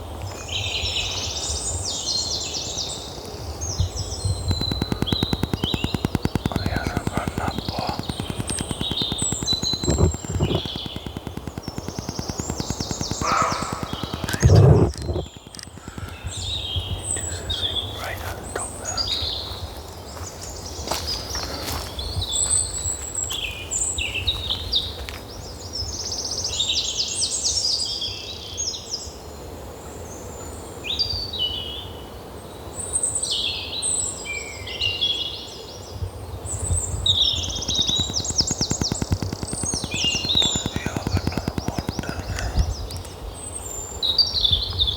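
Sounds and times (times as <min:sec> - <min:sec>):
songbirds singing: 0:00.0 - 0:44.9
sharp clicks: 0:03.2 - 0:19.9, 0:36.5 - 0:43.2
steady low rumble: 0:03.4 - 0:20.1.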